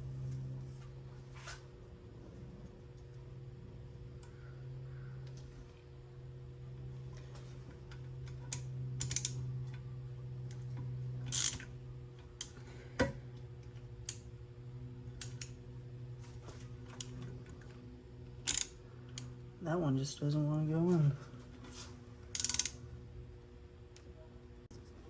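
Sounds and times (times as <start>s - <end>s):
low hum: 0.0s - 25.0s
metal parts clicking and tapping: 22.3s - 22.8s.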